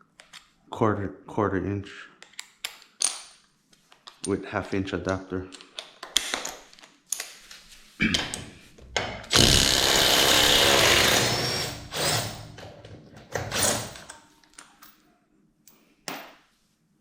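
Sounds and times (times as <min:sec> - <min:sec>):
impact driver hammering: 0:09.3 - 0:12.4.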